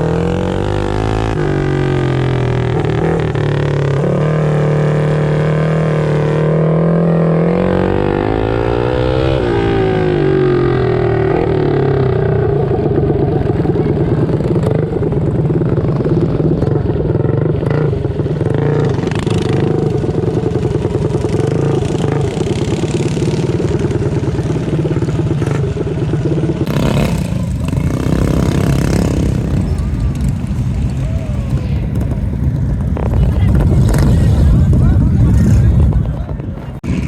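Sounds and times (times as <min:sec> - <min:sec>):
small engines running: 0:26.6 - 0:37.0
rush of noise: 0:26.7 - 0:37.0.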